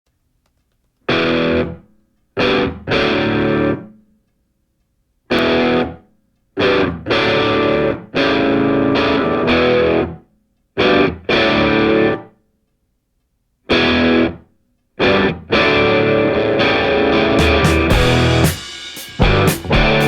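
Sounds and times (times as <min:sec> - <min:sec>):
distorted electric guitar chords: 0:01.1 - 0:01.8, 0:02.4 - 0:03.9, 0:05.3 - 0:06.0, 0:06.6 - 0:10.2, 0:10.8 - 0:12.3, 0:13.7 - 0:14.4, 0:15.0 - 0:20.0.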